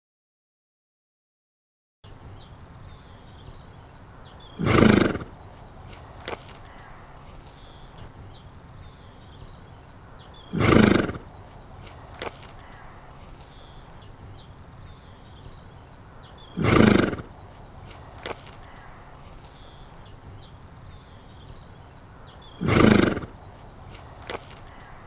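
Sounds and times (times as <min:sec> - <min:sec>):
horse grunting: 0:04.3 - 0:08.4, 0:10.3 - 0:14.4, 0:16.3 - 0:20.5, 0:22.2 - 0:25.0.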